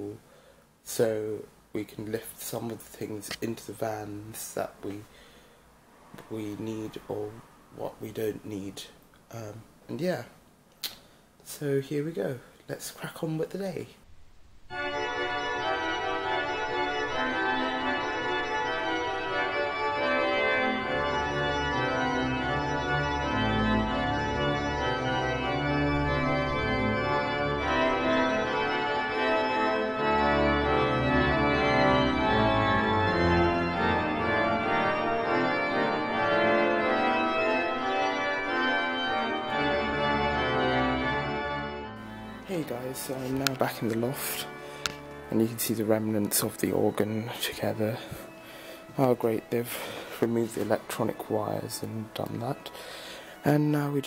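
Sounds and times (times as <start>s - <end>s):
organ music: 14.6s - 54.0s.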